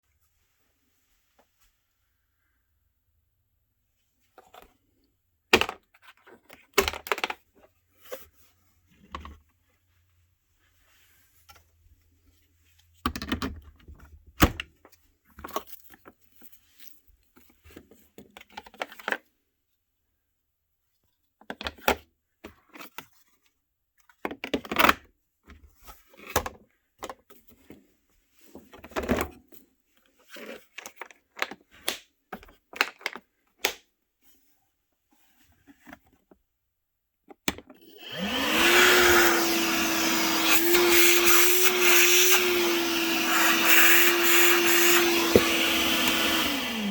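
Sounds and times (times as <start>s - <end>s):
vacuum motor whine: 37.8s - 46.9s.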